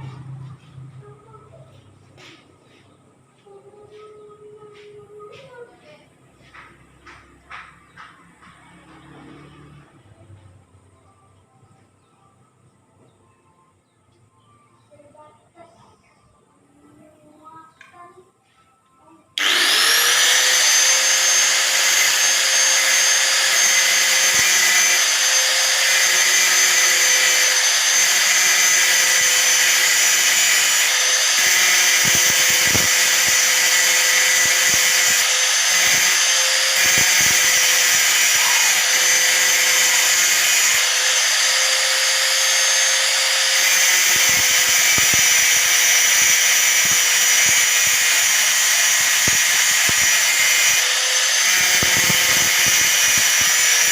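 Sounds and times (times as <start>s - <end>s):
angle grinder whining: 19.4s - 53.9s.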